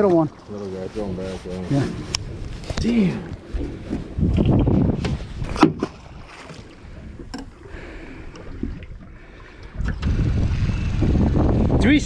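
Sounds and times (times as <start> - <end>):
low rumbling aboard boat: 0.0 - 12.0
sharp knocks: 7.3 - 7.6.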